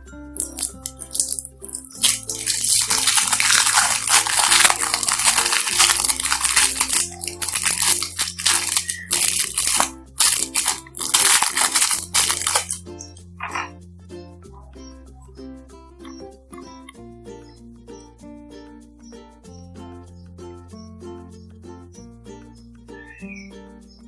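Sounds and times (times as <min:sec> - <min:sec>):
light background music: 0:00.0 - 0:24.0
slime squished and crackling: 0:00.4 - 0:12.8, 0:13.4 - 0:13.7.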